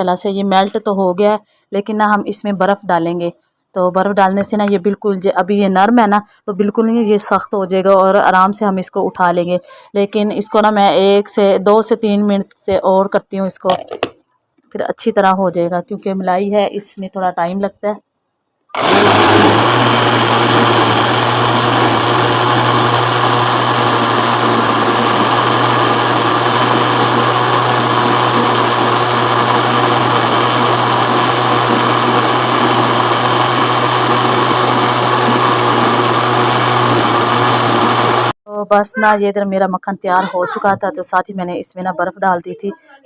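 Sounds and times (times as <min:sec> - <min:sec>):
electric blender motor running: 0:18.8 - 0:38.4.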